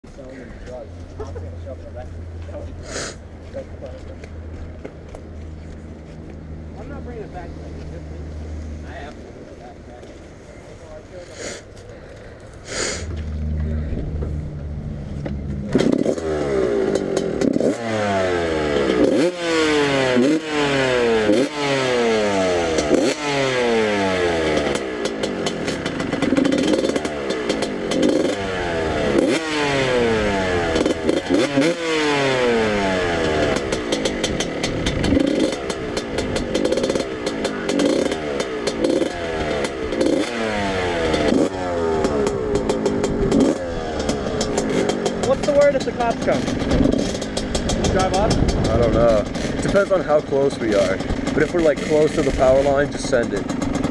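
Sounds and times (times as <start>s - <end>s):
dirt bike engine revving: 10.8s - 53.9s.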